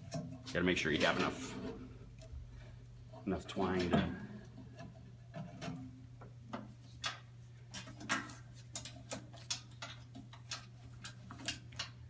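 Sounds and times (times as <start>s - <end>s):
steady low hum: 0.0s - 9.8s
hands tying twine: 0.0s - 12.0s.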